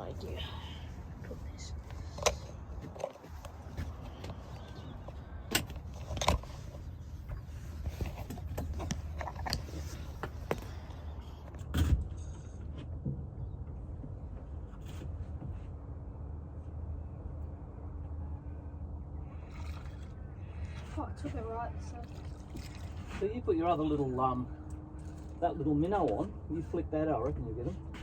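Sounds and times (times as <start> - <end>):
fishing gear knocking and rattling: 7.8 - 10.7.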